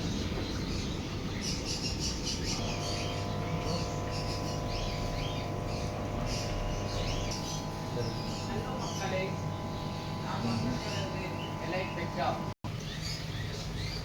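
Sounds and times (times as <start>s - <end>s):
steady hum: 0.0s - 12.8s
birds chirping: 0.0s - 14.0s.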